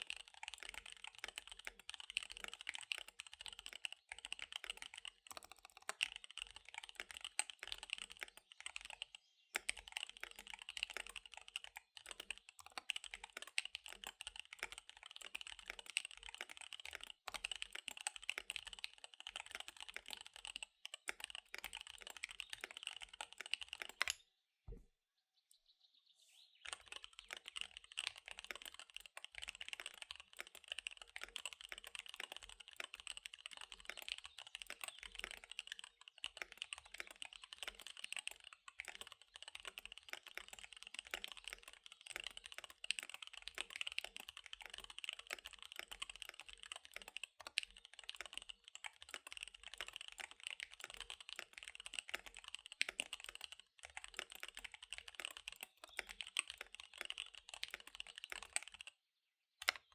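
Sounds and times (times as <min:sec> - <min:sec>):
fast mechanical keyboard typing: 0:00.0 - 0:24.2, 0:26.7 - 0:59.0, 0:59.6 - 0:59.9.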